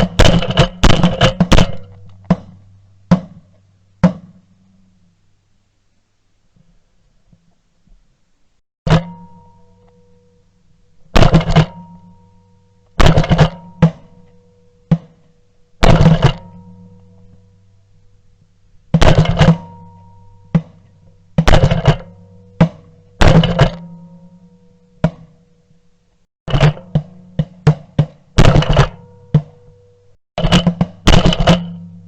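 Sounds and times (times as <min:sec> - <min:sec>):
shotgun shots: 0:00.0 - 0:02.4, 0:13.0 - 0:13.7, 0:21.4 - 0:22.1.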